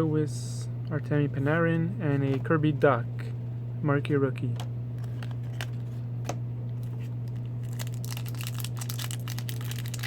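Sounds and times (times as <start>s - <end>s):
steady low hum: 0.0s - 10.0s
foil wrapper crinkling and tearing: 6.8s - 10.0s.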